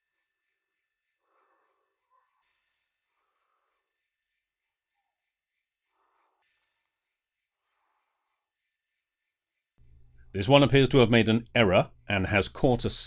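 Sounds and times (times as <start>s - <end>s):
insects chirping: 7.0s - 12.8s.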